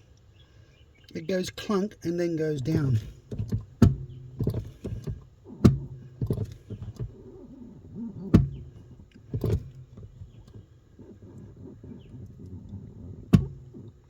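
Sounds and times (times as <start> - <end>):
brake booster dull clunks: 2.6 - 14.0.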